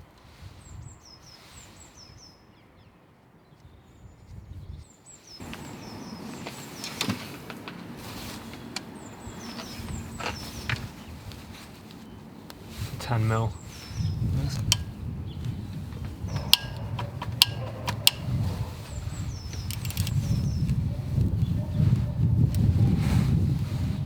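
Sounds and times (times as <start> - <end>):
small bird chirping: 3.6 - 7.4, 8.0 - 12.5, 13.3 - 22.0
handling noise: 5.4 - 22.7
metal tools clinking: 16.3 - 18.3, 19.6 - 20.2.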